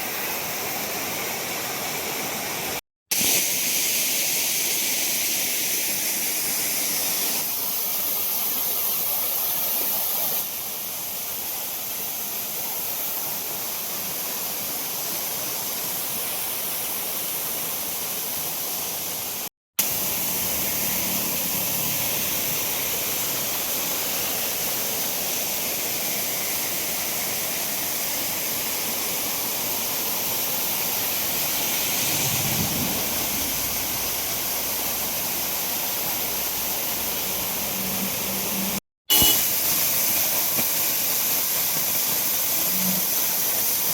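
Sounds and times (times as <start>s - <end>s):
waterfall rushing: 19.8s - 38.8s.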